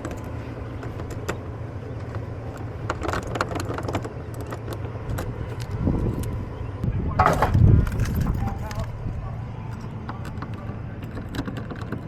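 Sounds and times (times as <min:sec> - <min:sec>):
low rumble: 0:04.9 - 0:11.3
lock picks clicking in lock: 0:09.7 - 0:12.0.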